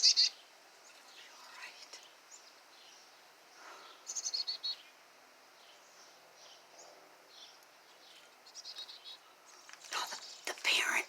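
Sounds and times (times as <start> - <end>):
small songbirds chirping: 0.0 - 11.0.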